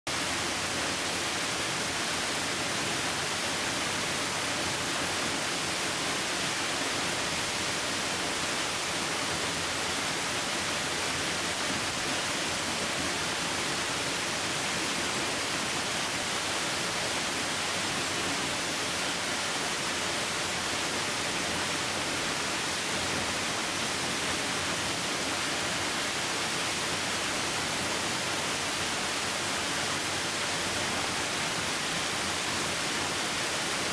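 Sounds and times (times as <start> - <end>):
waterfall hiss: 0.1 - 33.9.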